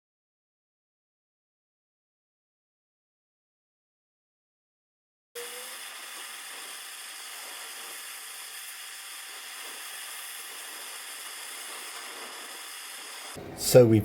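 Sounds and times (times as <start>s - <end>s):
steady high hiss: 5.4s - 14.0s.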